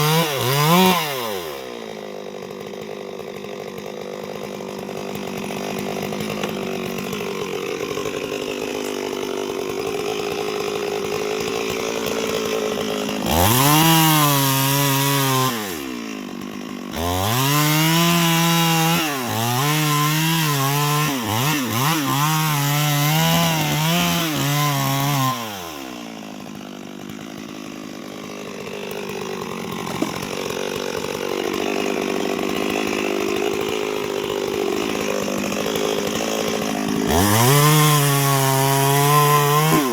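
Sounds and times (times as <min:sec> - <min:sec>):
chainsaw revving and idling: 0:00.0 - 0:39.9
chain cutting into wood: 0:04.5 - 0:15.8, 0:28.5 - 0:39.9.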